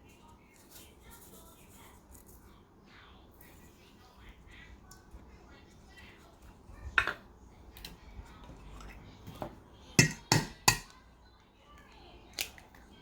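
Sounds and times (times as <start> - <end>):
utensils tapping mixing bowl: 8.8 - 11.0.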